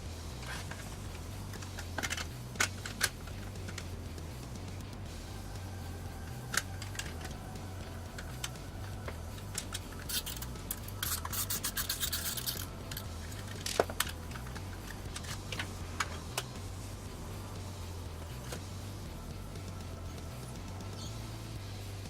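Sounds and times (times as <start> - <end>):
steady low hum: 0.0 - 22.0
scratchy clicking and rustling: 9.5 - 16.6.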